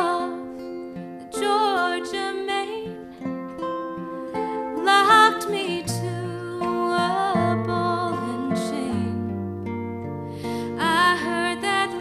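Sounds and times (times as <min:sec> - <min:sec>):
acoustic guitar chords: 0:00.0 - 0:12.0
person singing: 0:04.0 - 0:09.3, 0:10.4 - 0:12.0
singer breathing in: 0:10.2 - 0:10.8.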